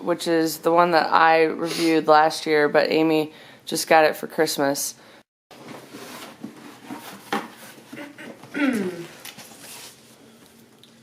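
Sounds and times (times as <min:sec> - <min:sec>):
cardboard box rustling: 0:05.6 - 0:07.9.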